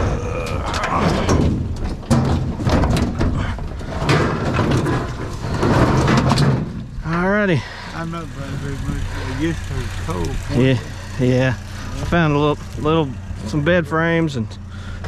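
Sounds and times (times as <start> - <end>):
metal appliance knocking and scraping: 1.0 - 7.2.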